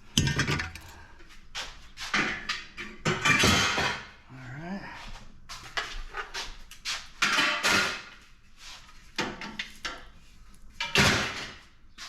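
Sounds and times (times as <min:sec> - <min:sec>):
aluminum scrap clanking: 0:00.0 - 0:01.1.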